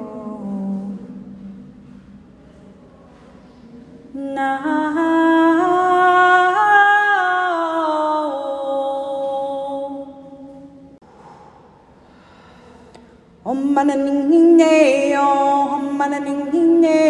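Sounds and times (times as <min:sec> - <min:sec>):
person singing wordless echoing line: 0:00.0 - 0:02.2, 0:04.1 - 0:11.0, 0:13.4 - 0:17.0.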